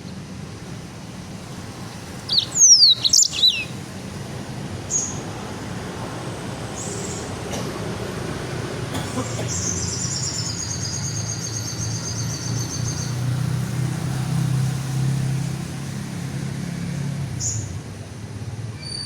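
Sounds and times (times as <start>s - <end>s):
songbird trilling: 1.8s - 3.8s, 9.4s - 13.2s.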